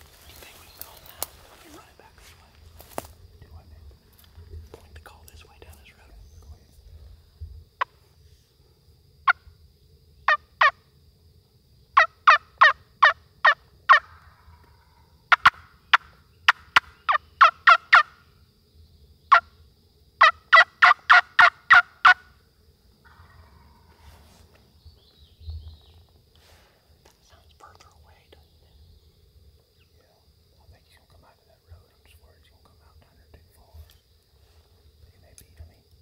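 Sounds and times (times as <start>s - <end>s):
turkey yelps: 20.2s - 22.2s.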